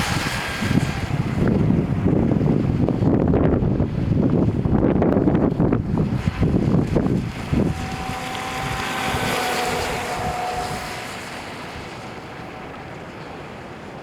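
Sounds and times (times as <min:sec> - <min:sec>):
water swell hissing: 0:00.0 - 0:03.1, 0:05.6 - 0:14.0
wind buffeting microphone: 0:00.0 - 0:14.0
electric motor whine: 0:05.5 - 0:13.4.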